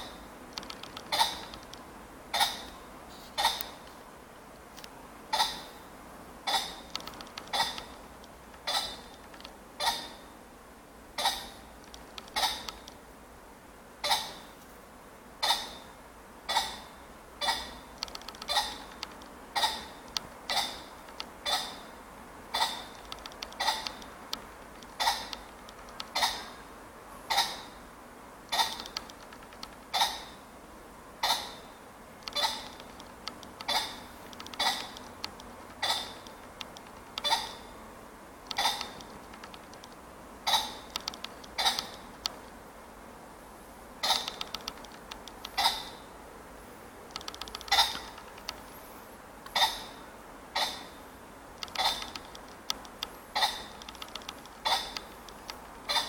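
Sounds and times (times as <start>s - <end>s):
pheasant clucking call: 0.0s - 1.7s, 2.3s - 2.8s, 3.4s - 3.8s, 5.3s - 5.8s, 6.5s - 8.0s, 8.6s - 10.2s, 11.2s - 13.0s, 15.4s - 15.8s, 16.5s - 21.9s, 22.5s - 26.6s, 27.3s - 27.7s, 28.5s - 30.4s, 31.2s - 37.7s, 38.5s - 42.4s, 44.0s - 46.0s, 47.1s - 48.6s, 49.5s - 50.0s, 50.6s - 51.0s, 51.6s - 56.0s.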